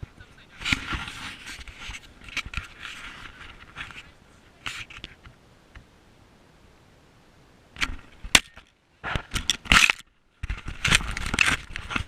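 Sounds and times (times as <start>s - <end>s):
sharp cracks: 7.8s - 11.7s.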